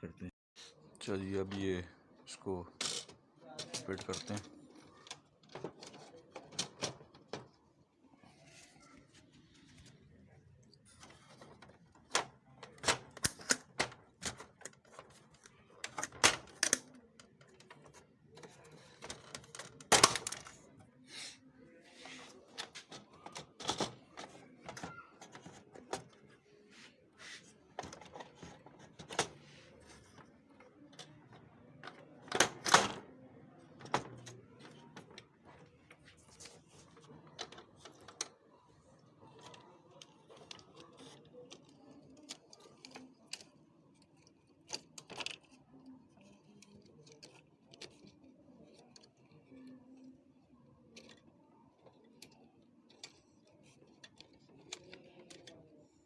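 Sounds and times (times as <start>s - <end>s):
printer parts clicking and knocking: 2.7s - 7.6s, 11.0s - 20.6s, 22.4s - 26.2s, 27.8s - 49.3s.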